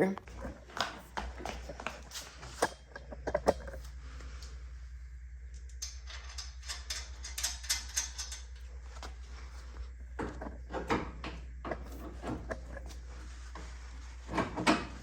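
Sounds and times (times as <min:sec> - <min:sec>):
steady low hum: 0:00.0 - 0:15.0
metal parts clicking and clinking: 0:05.5 - 0:08.8.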